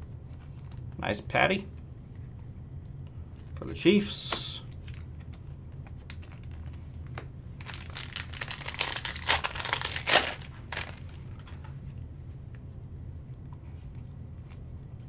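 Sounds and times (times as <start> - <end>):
plastic wrapper crinkling and tearing: 4.7 - 11.7.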